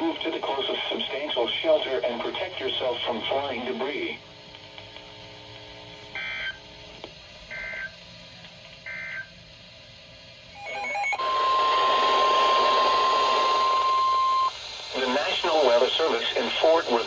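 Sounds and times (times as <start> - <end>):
static hiss: 0.0 - 17.0
steady warning alarm tone: 6.2 - 6.6, 7.5 - 7.9, 8.9 - 9.3, 10.6 - 15.2
warbling data bursts: 10.6 - 17.0.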